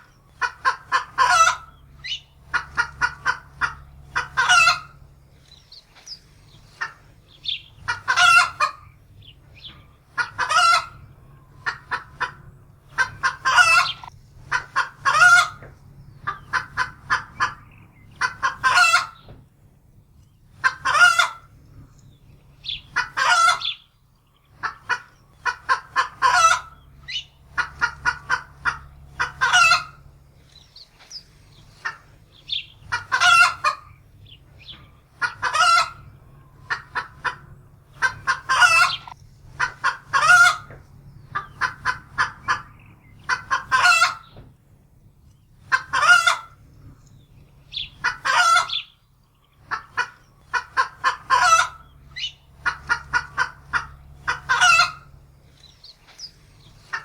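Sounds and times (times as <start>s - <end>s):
hen cackling in alarm: 0.0s - 5.1s, 6.7s - 19.3s, 20.5s - 21.5s, 22.6s - 23.9s, 24.5s - 30.2s, 30.8s - 44.4s, 45.6s - 46.6s, 47.6s - 49.0s, 49.6s - 57.0s.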